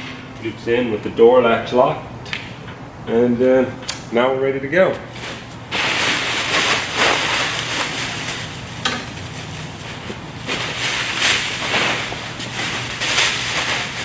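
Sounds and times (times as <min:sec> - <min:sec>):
sharp click: 0:03.8 - 0:04.1
plastic wrap rustling: 0:04.8 - 0:14.0.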